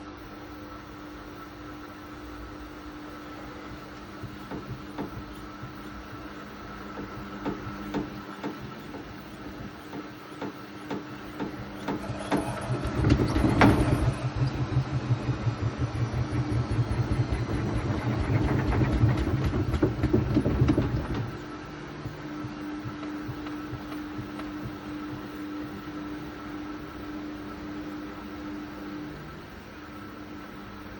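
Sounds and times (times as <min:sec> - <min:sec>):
washing machine motor hum: 0:00.0 - 0:30.9
washing machine drum thudding: 0:04.2 - 0:06.1, 0:06.9 - 0:25.3.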